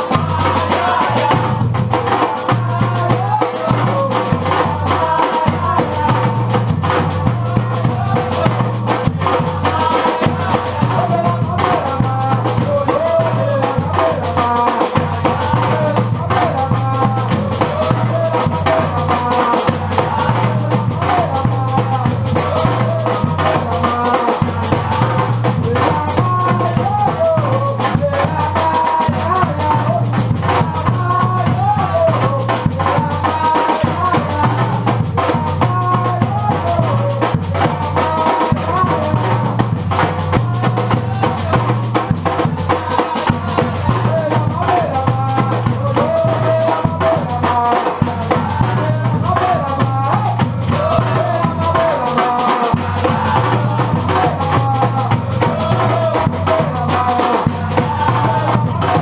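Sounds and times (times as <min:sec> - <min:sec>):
percussion group drumming: 0:00.0 - 0:59.0
deep bass drums: 0:00.2 - 0:14.3, 0:33.8 - 0:47.4, 0:48.0 - 0:52.2, 0:52.8 - 0:59.0.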